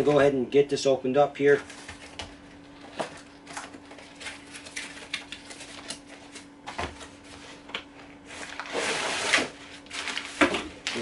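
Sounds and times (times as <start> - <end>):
packaging clicks and rustles: 1.7 - 6.5, 9.8 - 11.0.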